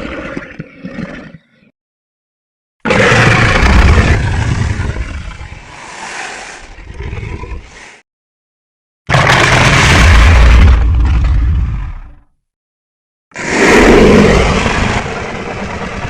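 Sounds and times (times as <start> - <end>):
dinosaur roar: 2.8 - 5.7, 13.4 - 16.0
low rumbling growls: 2.9 - 5.8.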